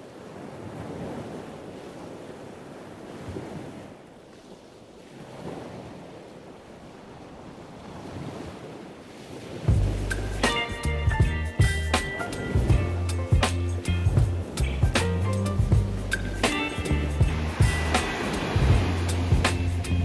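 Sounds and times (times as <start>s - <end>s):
ocean surf breaking on a beach: 0.0s - 9.8s, 14.4s - 20.0s
music: 9.7s - 20.0s
wind buffeting the microphone: 11.2s - 20.0s.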